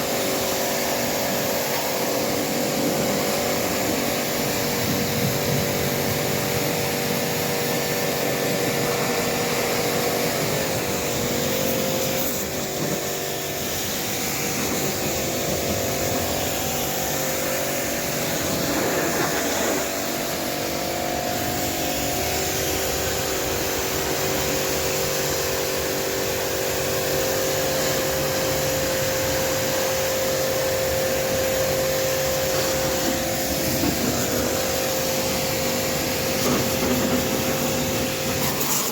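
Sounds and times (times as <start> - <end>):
hissing rush: 8.4 - 24.6.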